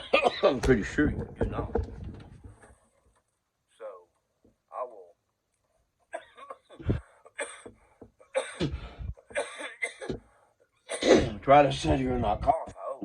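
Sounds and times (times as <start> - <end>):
man coughing: 0.0 - 0.6, 6.1 - 11.5.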